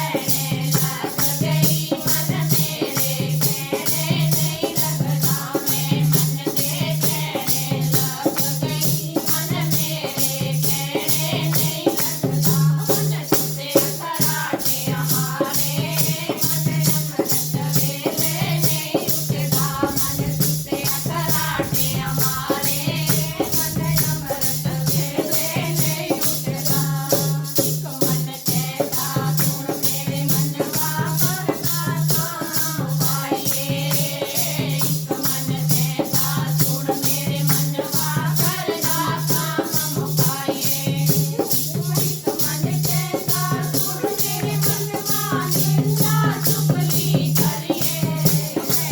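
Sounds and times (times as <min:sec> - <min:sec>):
bright percussion beat: 0:00.0 - 0:48.9
devotional singing: 0:00.0 - 0:48.9
low pulsing tone: 0:19.5 - 0:26.2.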